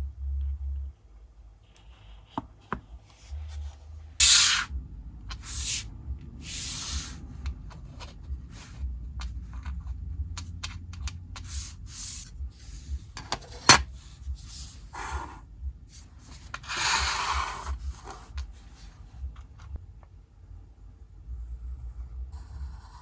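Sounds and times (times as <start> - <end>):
rubbing and scraping: 1.7 - 19.8
short bursts of hiss: 4.2 - 4.7, 5.4 - 5.8.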